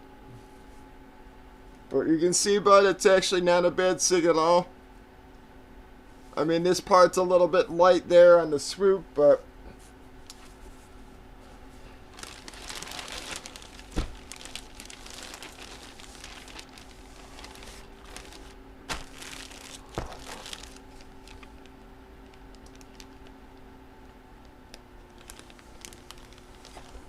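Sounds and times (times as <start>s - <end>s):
plastic packaging crinkling: 12.0s - 23.6s, 24.7s - 27.0s.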